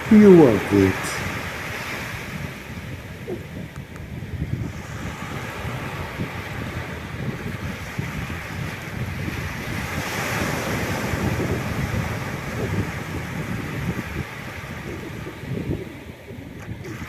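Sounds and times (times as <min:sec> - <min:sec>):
ocean surf breaking: 0:00.0 - 0:02.3
wind buffeting microphone: 0:01.2 - 0:17.0.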